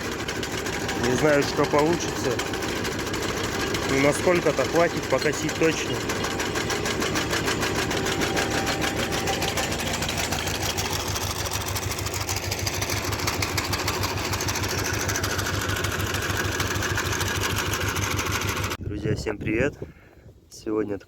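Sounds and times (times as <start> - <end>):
tractor engine running: 0.0 - 18.8.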